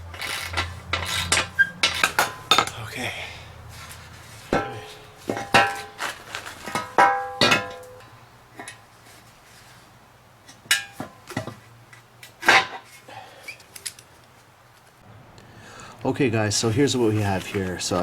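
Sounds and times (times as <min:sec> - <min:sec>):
metal tools clanking: 0:00.0 - 0:09.0, 0:10.4 - 0:14.0.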